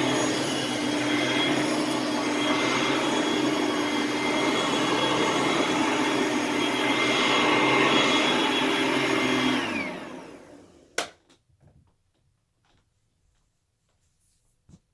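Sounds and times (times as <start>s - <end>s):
vacuum cleaner running: 0.0s - 11.1s.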